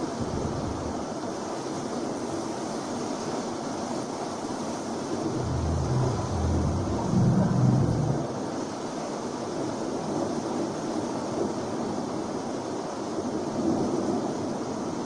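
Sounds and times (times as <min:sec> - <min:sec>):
steady rushing noise: 0:00.0 - 0:01.2, 0:04.9 - 0:08.8
deep thunder rumble: 0:00.2 - 0:01.0, 0:05.2 - 0:08.5.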